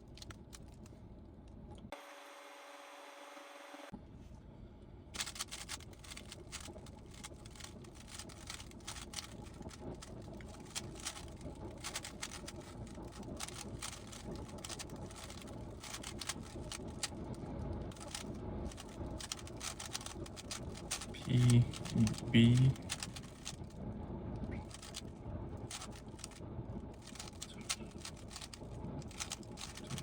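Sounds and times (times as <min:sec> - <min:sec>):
low background rumble: 0:00.0 - 0:01.9, 0:03.9 - 0:30.0
plastic cube clicking: 0:05.2 - 0:17.1, 0:17.9 - 0:23.6, 0:27.0 - 0:30.0.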